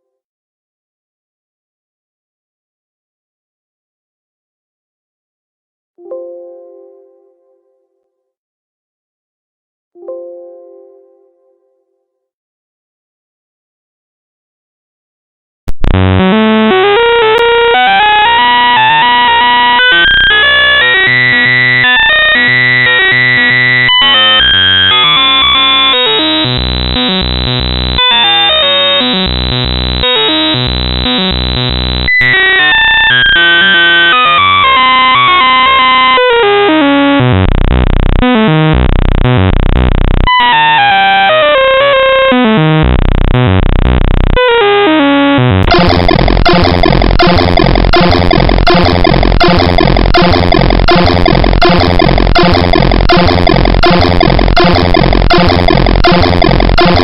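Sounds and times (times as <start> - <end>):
harsh computer-generated noise music: 15.8 - 57.0.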